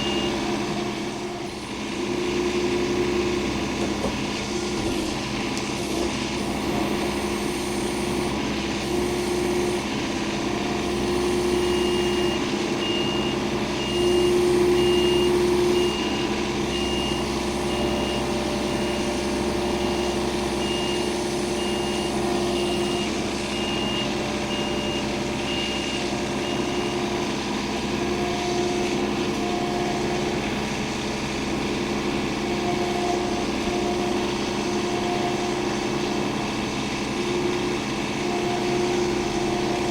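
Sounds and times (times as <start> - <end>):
reversing alarm beeps: 0.0 - 0.8, 5.9 - 27.3
heavy machine engine running: 0.0 - 39.9.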